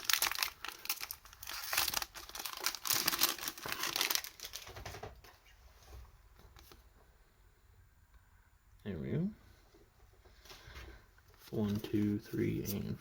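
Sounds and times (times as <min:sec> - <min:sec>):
foil wrapper tearing and crinkling: 0:00.0 - 0:04.8.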